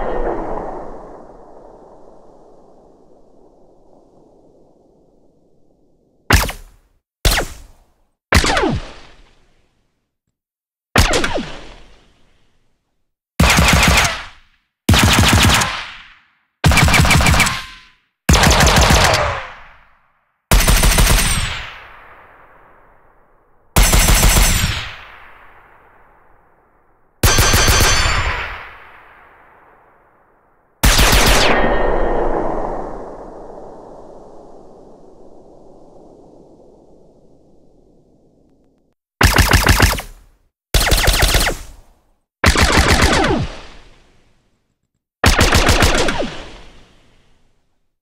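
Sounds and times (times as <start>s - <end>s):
ricochet whines: 0.0s - 3.2s
suppressed gunfire bursts: 39.2s - 43.8s, 45.2s - 46.7s.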